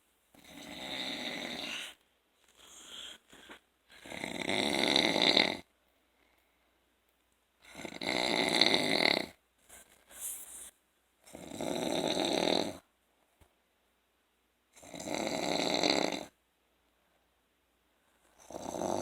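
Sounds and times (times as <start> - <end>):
person snoring: 0.4 - 2.0, 2.6 - 5.7, 7.6 - 9.4, 11.3 - 12.8, 14.8 - 16.4, 18.4 - 19.0.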